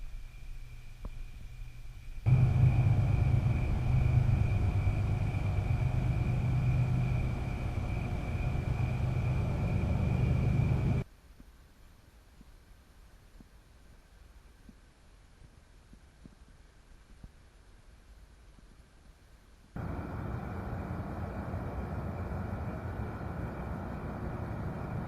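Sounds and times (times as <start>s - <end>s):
thin high whine: 0.0s - 11.0s, 19.8s - 25.0s
low mechanical rumble: 0.2s - 11.0s, 19.8s - 25.0s.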